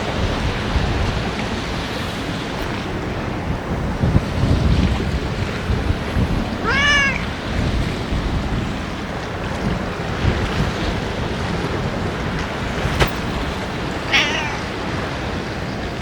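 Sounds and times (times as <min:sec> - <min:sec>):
wind buffeting microphone: 0:00.0 - 0:16.0
cat meowing: 0:06.6 - 0:07.4, 0:14.0 - 0:14.9.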